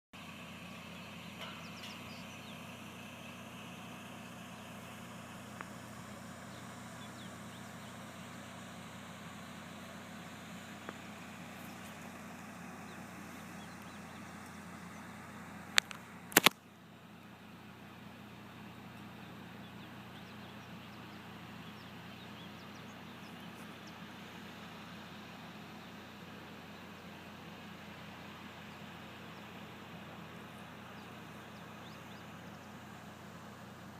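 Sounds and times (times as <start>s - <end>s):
constant hiss: 0.2s - 33.9s
low mechanical hum: 0.2s - 33.9s
sharp click: 15.8s - 16.6s.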